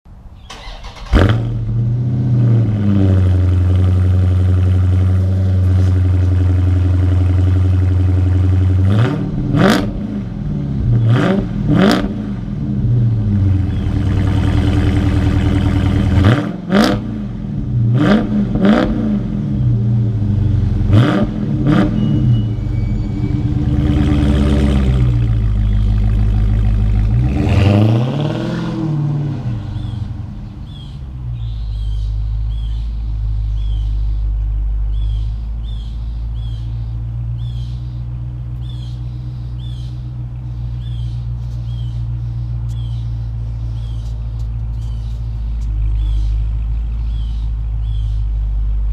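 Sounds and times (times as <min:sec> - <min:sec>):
car engine idling: 0:00.1 - 0:18.0, 0:19.2 - 0:48.9
car engine starting: 0:00.3 - 0:48.9
engine revving: 0:00.5 - 0:31.0.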